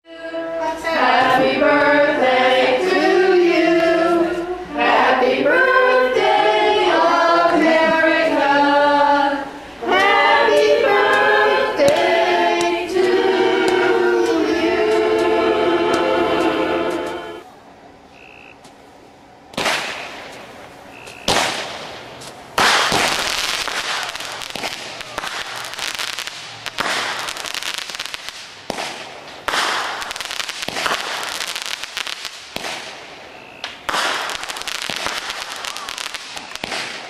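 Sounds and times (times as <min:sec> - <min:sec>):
choir singing long notes: 0:00.0 - 0:17.5.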